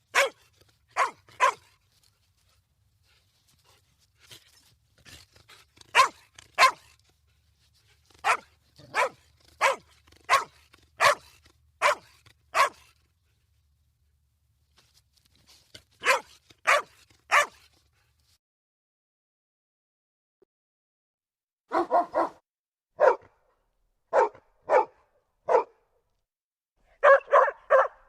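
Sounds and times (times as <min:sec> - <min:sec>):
dog barking: 0:00.1 - 0:00.4, 0:01.0 - 0:01.7, 0:05.9 - 0:06.9, 0:08.2 - 0:12.9, 0:16.0 - 0:17.6, 0:21.7 - 0:22.4, 0:23.0 - 0:23.4, 0:24.1 - 0:25.8, 0:27.0 - 0:28.0.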